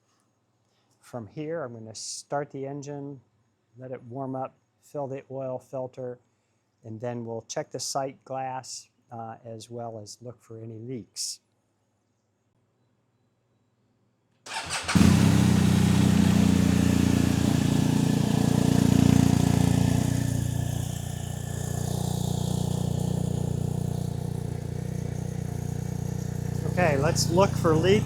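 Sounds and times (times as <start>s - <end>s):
starter motor cranking: 14.5s - 20.6s, 21.6s - 28.0s
motorcycle engine idling: 14.5s - 28.0s.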